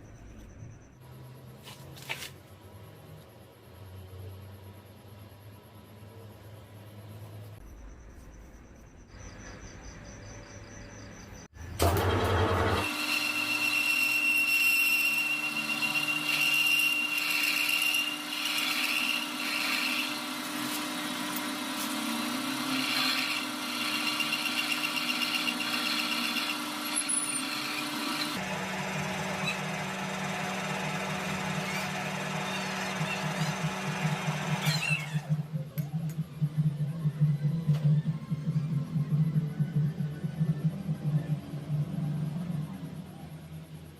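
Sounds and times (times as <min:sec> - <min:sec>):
metal lathe running: 0:11.8 - 0:35.2
high whine of tool on metal: 0:12.3 - 0:35.3.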